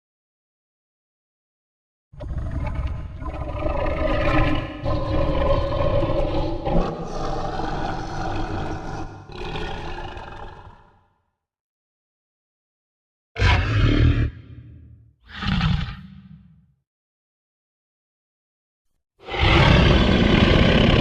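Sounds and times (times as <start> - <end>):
monster roar: 2.2 - 11.2, 13.4 - 16.6, 19.2 - 21.0.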